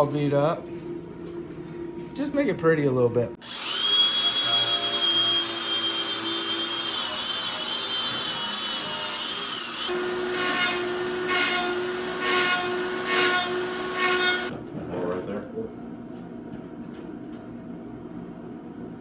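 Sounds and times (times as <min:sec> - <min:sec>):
power tool humming: 0:03.4 - 0:14.5
power tool whining: 0:03.4 - 0:14.5.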